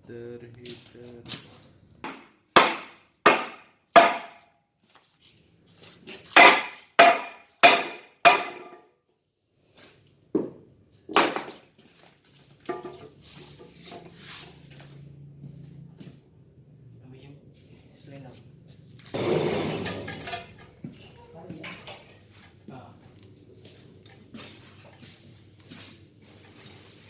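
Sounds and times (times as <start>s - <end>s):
hammer striking metal housing: 19.2s - 20.8s.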